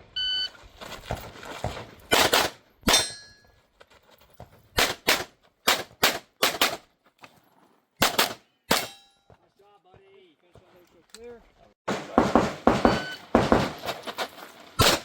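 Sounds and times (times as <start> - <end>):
steel target ringing: 2.9 - 3.5, 8.7 - 9.3
pistol shots: 4.8 - 6.8, 8.0 - 9.0, 11.9 - 13.9.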